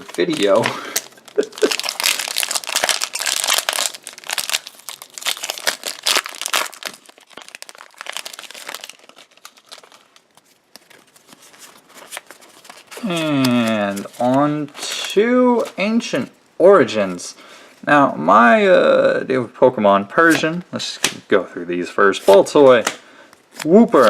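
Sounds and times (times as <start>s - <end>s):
foil wrapper crinkling and tearing: 0.0s - 15.8s.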